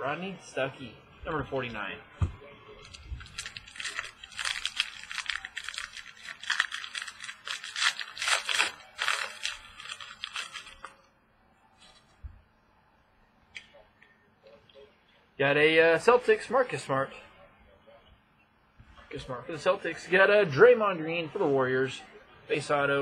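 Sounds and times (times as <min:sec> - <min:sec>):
trading cards rustling and flicking: 0:02.8 - 0:11.0.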